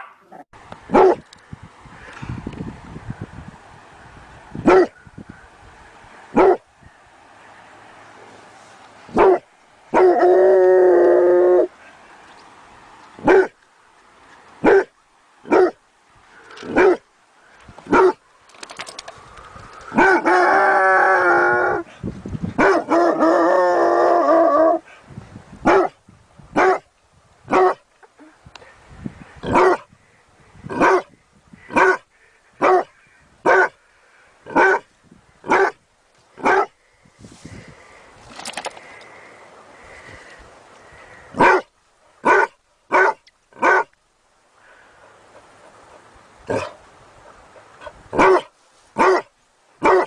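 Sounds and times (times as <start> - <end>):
dog barking: 0.0 - 1.2, 4.7 - 4.9, 6.4 - 6.6, 9.2 - 9.4, 13.2 - 13.5, 14.6 - 14.9, 15.5 - 15.8, 16.7 - 17.0, 17.9 - 18.2, 22.6 - 23.2, 25.7 - 26.0, 26.6 - 26.8, 27.5 - 27.8, 29.5 - 29.8, 30.8 - 31.1, 31.8 - 32.0, 32.6 - 33.8, 34.5 - 34.8, 35.5 - 35.8, 36.4 - 36.7, 41.4 - 43.9, 48.2 - 50.0.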